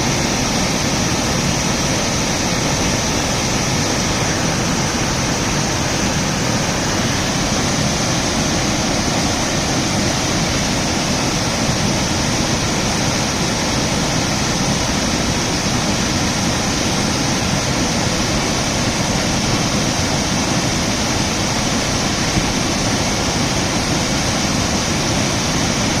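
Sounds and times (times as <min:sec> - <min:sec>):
waterfall rushing: 0:00.0 - 0:26.0.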